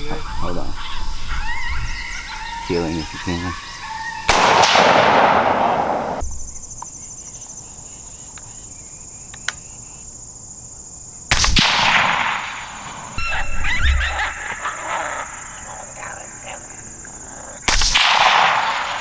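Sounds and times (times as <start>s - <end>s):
insects buzzing: 0.0s - 19.0s
rifle shot: 4.3s - 6.0s, 11.3s - 13.0s, 17.7s - 19.0s.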